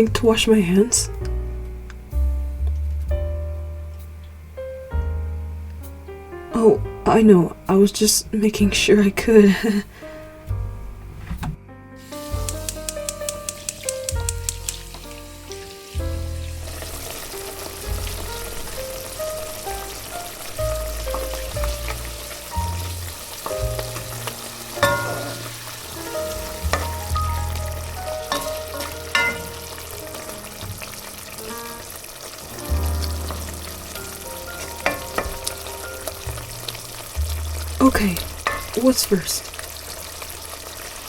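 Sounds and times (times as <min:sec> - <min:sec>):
soft melodic music: 0:00.0 - 0:39.9
steady hiss: 0:11.9 - 0:41.0.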